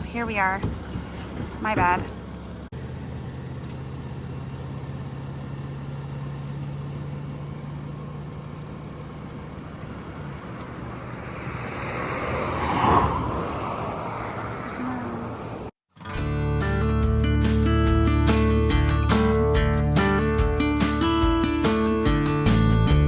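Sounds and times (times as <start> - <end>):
road noise: 0.0 - 15.8
truck engine hum: 0.0 - 15.8, 17.2 - 23.0.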